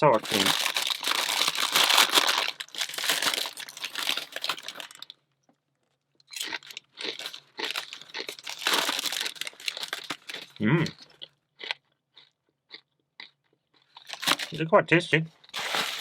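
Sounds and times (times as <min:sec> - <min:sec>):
chip bag crinkling: 0:00.0 - 0:05.2, 0:06.3 - 0:11.2, 0:13.8 - 0:14.6, 0:15.4 - 0:16.0
crunching chips: 0:00.0 - 0:05.2, 0:06.2 - 0:14.6, 0:15.4 - 0:16.0.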